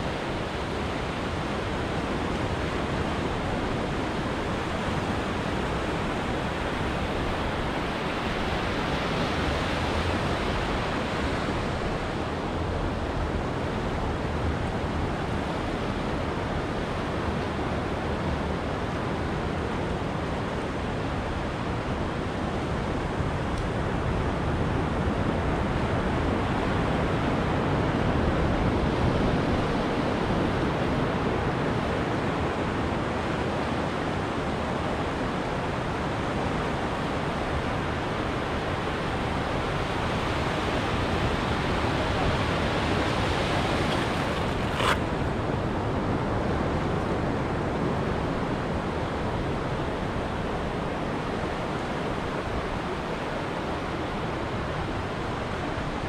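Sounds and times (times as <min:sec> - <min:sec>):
ocean surf washing onto beach: 0:35.0 - 0:46.2.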